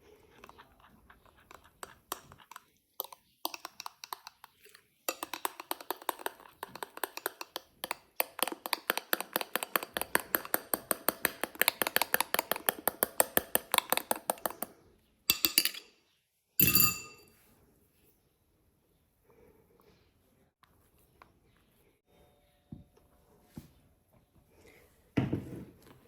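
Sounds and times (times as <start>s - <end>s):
utensil scraping bowl: 0.0s - 14.7s
utensil beating against bowl: 1.4s - 14.7s, 15.3s - 15.8s
ringing clink on bowl rim: 16.6s - 17.3s.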